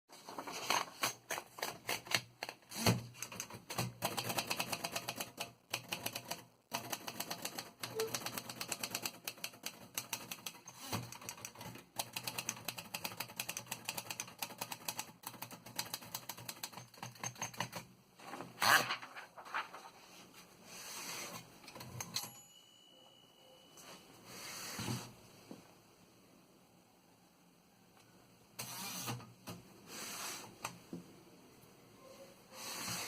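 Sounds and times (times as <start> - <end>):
typewriter clatter: 0.3 - 17.8.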